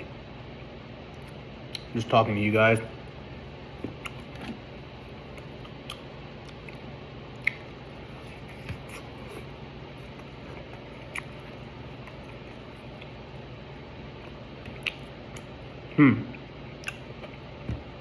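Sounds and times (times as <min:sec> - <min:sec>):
low room hum: 0:00.0 - 0:18.0
person chewing: 0:03.8 - 0:13.4, 0:14.1 - 0:18.0.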